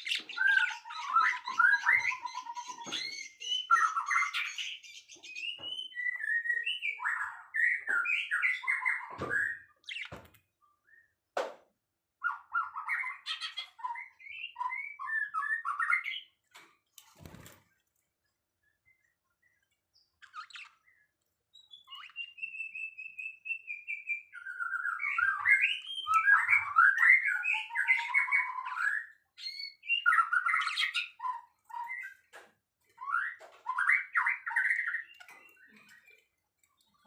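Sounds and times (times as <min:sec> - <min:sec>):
songbird singing: 0:00.0 - 0:11.2, 0:18.6 - 0:37.0.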